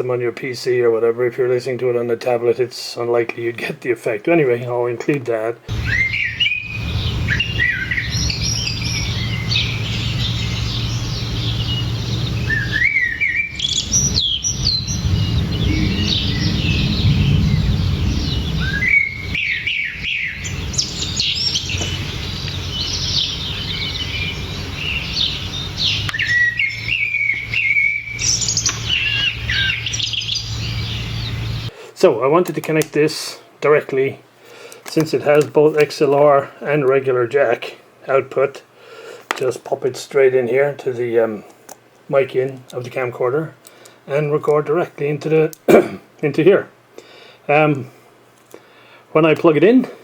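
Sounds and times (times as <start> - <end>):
garden birds singing: 4.3 - 41.4
low background rumble: 5.7 - 19.4.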